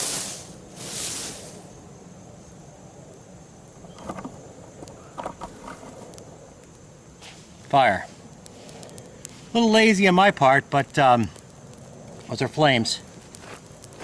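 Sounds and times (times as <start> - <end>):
person blowing on coal: 0.0 - 1.6.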